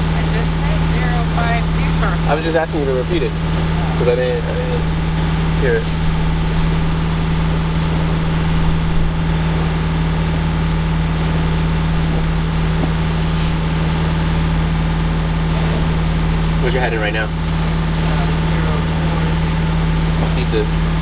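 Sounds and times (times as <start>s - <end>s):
boat engine droning: 0.0s - 21.0s.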